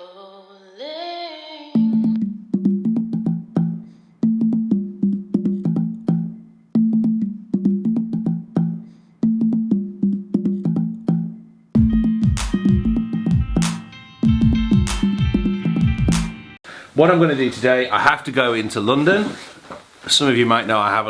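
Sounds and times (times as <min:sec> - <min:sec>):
instrumental intro music: 0:11.8 - 0:16.6.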